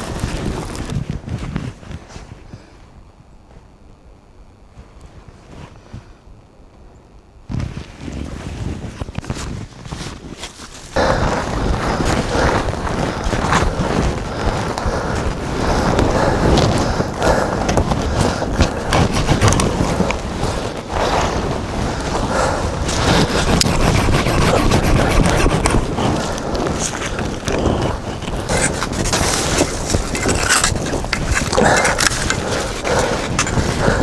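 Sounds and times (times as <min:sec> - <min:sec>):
pine branches rustling and crackling: 0:00.0 - 0:02.4, 0:07.5 - 0:34.0
snow crunching: 0:07.8 - 0:34.0.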